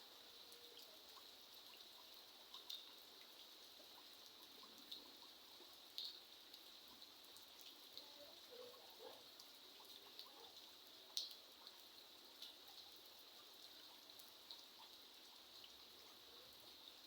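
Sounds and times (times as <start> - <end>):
light rain: 0.0 - 17.0
water drops dripping: 11.1 - 11.8.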